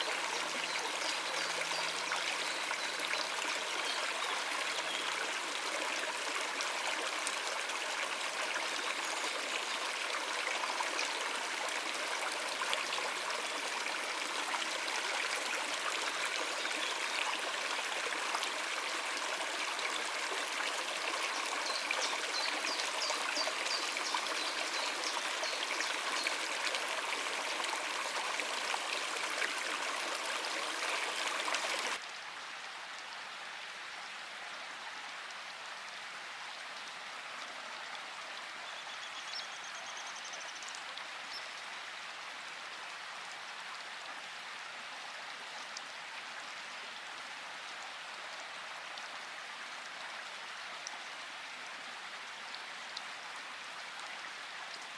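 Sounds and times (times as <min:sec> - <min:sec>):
stream water rushing: 0:00.0 - 0:32.1.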